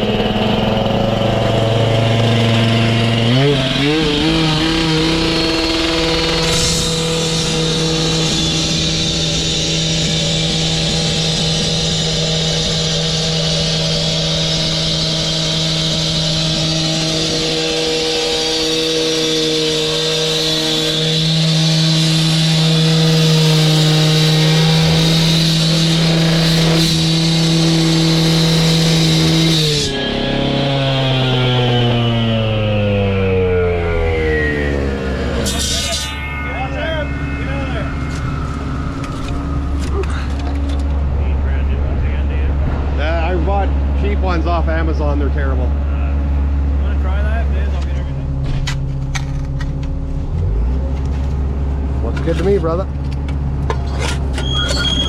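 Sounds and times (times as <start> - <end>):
cut-off saw engine at high revs: 0.0 - 47.7
saw cutting hiss: 2.3 - 32.4.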